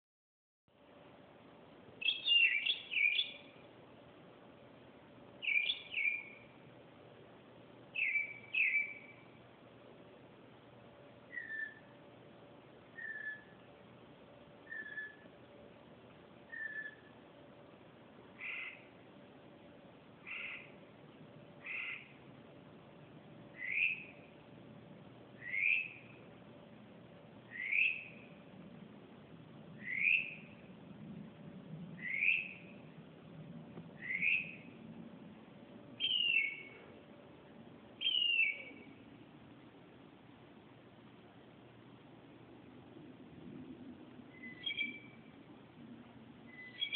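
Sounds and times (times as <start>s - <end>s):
bird calling: 2.0s - 3.6s, 5.4s - 6.5s, 8.0s - 9.3s, 11.3s - 11.9s, 12.9s - 13.6s, 14.6s - 15.4s, 16.5s - 17.2s, 18.3s - 19.0s, 20.2s - 20.9s, 21.6s - 22.3s, 23.5s - 24.4s, 25.4s - 26.3s, 27.5s - 28.4s, 29.8s - 30.6s, 32.0s - 32.8s, 34.0s - 34.8s, 36.0s - 36.9s, 38.0s - 39.0s, 44.3s - 45.3s, 46.5s - 46.9s
bird whistling short notes: 8.0s - 9.1s, 11.3s - 11.9s, 13.0s - 13.5s, 14.7s - 15.2s, 16.5s - 17.1s, 32.0s - 32.6s, 34.0s - 34.6s, 36.0s - 36.7s, 38.0s - 38.8s, 44.3s - 45.2s, 46.5s - 46.9s.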